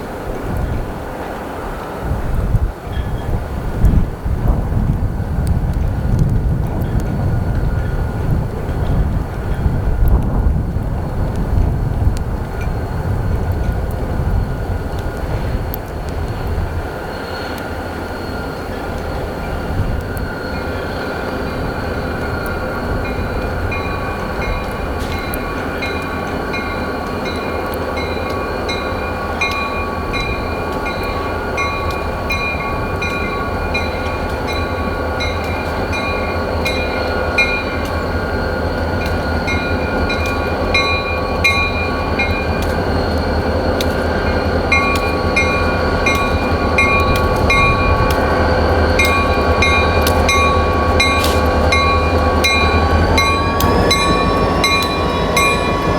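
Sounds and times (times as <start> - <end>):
freight train rumbling: 0.0 - 55.9
high pulsing ring: 20.3 - 55.9.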